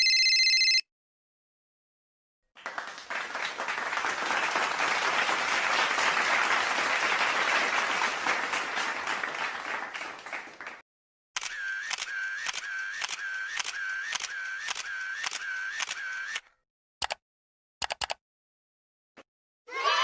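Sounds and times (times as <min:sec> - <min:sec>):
crowd applauding: 0:02.6 - 0:10.8.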